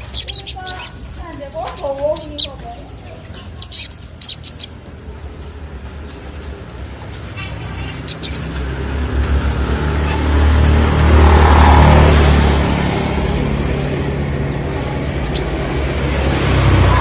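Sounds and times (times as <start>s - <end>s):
bird chirping: 0.0s - 5.8s, 7.4s - 8.9s, 15.0s - 17.0s
motor vehicle passing by: 3.6s - 17.0s.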